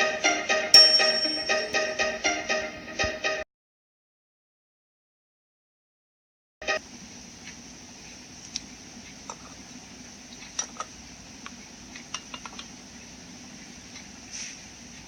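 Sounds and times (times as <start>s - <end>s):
faint steady hum: 6.6s - 15.0s.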